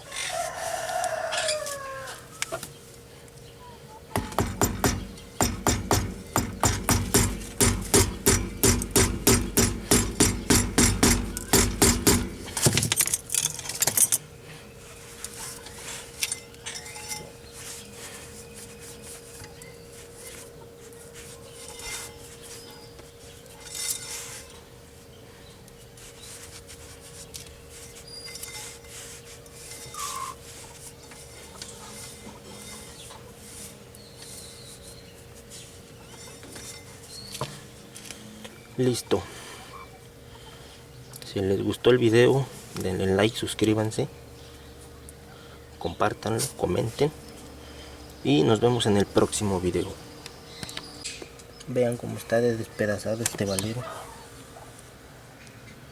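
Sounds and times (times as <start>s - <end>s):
hammer striking metal: 4.2s - 12.7s
faint clinks of tools: 16.2s - 17.4s.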